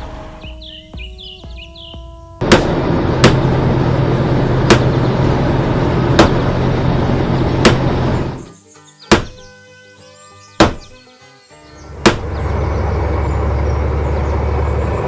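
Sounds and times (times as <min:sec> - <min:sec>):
loud engine-like hum: 0:02.4 - 0:08.5, 0:11.8 - 0:15.0
sharp bangs: 0:02.4 - 0:08.5, 0:09.1 - 0:09.5, 0:10.6 - 0:11.0, 0:11.9 - 0:12.6.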